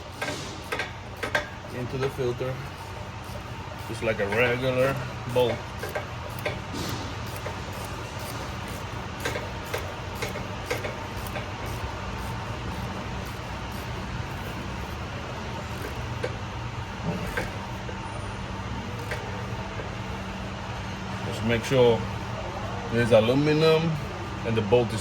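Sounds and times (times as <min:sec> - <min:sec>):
hand ratchet clicking: 0:00.0 - 0:15.0, 0:15.7 - 0:16.4
steady low hum: 0:00.0 - 0:25.0.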